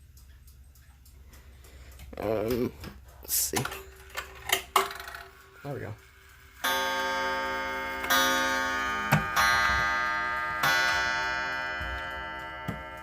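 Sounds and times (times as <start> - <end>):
clock ticking: 0.0 - 13.0
clock chime strikes: 6.6 - 13.0.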